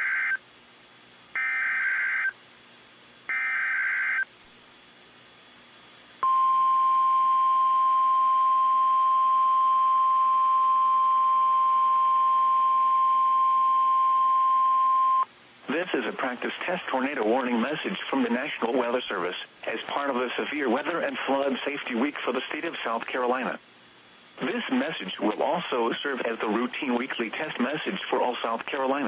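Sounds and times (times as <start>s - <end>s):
steady warning alarm tone: 0.0s - 0.4s, 1.4s - 2.4s, 3.3s - 4.3s, 6.2s - 15.2s.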